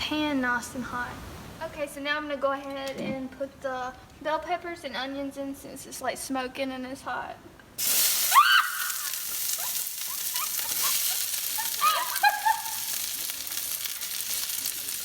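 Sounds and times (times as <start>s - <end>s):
vegetables sizzling in hot oil: 7.8s - 15.0s.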